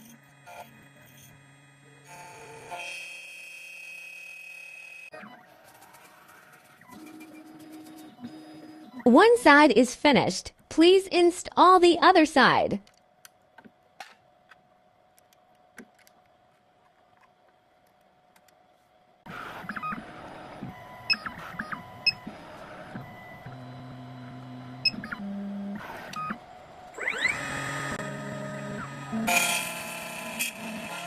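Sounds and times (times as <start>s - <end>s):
motors humming steadily: 0.0s - 10.2s, 12.4s - 31.0s
motor whine rising in pitch: 19.6s - 31.0s.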